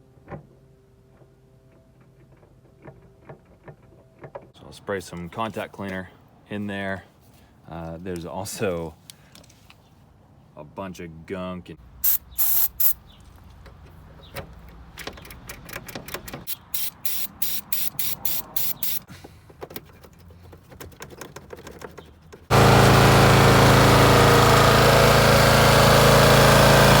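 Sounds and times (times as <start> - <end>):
aerosol spray spurts: 12.0 - 13.0, 16.5 - 19.1
lawn mower engine running: 22.5 - 27.0.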